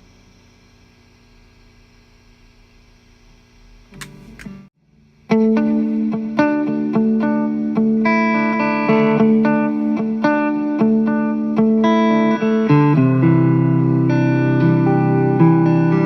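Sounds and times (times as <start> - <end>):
overdriven electric guitar chords: 4.0 - 16.0.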